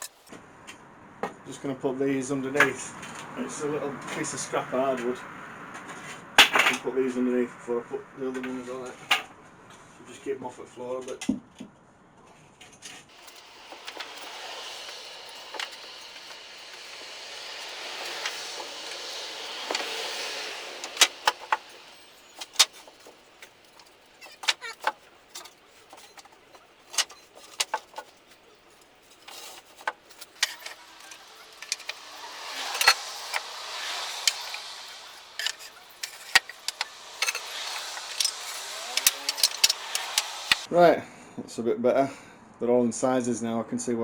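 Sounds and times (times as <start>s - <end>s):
wooden boards scraping and sliding: 12.6s - 40.7s.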